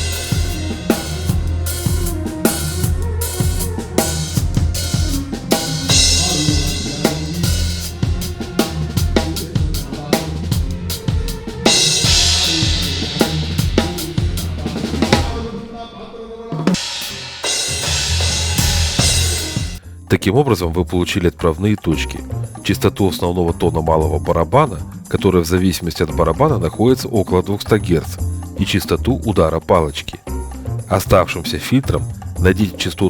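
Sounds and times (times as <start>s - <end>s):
cymbal crash: 0.0s - 15.6s, 16.7s - 19.8s
drum kit groove: 0.0s - 15.7s, 16.5s - 19.8s, 21.9s - 33.0s.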